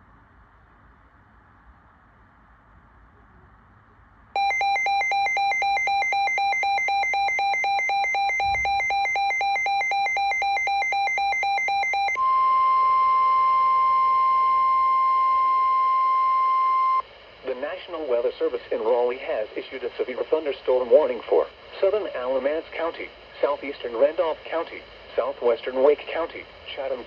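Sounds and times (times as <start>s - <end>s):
steady alarm tone: 4.4s - 15.8s.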